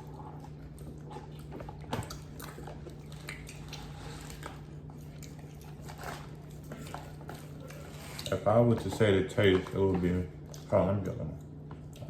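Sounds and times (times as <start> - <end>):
person biting and chewing: 0.1 - 8.4.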